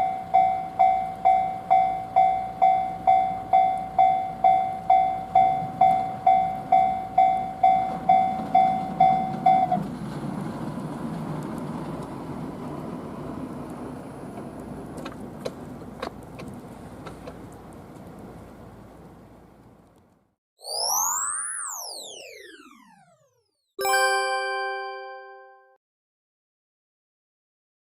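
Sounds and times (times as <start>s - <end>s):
level crossing warning bell: 0.0s - 9.8s, 23.8s - 25.7s.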